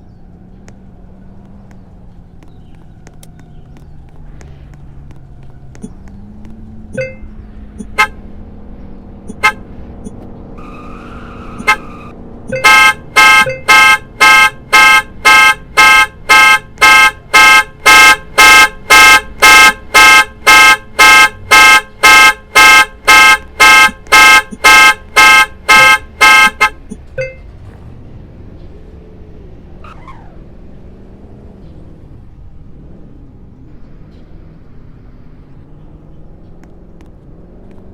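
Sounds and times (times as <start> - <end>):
brief beep: 7.0 - 7.9, 27.2 - 27.4
car alarm horn honking: 9.3 - 9.6, 10.6 - 27.4.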